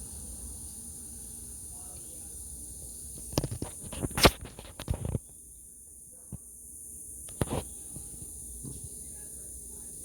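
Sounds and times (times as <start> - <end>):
steady high hiss: 0.0 - 4.2.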